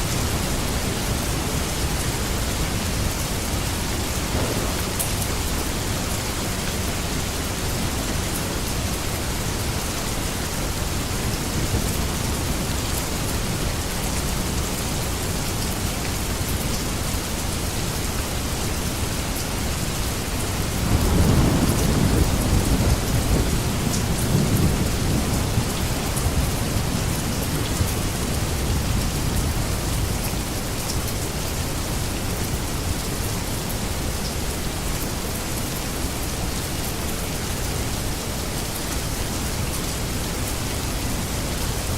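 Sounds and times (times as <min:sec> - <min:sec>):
steady rain: 0:00.0 - 0:41.9
thunder rumbling: 0:04.0 - 0:06.0, 0:20.9 - 0:27.4.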